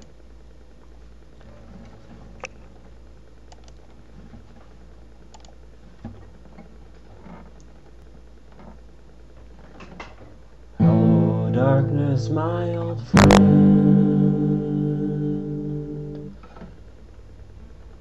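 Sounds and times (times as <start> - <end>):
low steady hum: 0.0 - 18.0
faint handling clicks: 3.5 - 4.0.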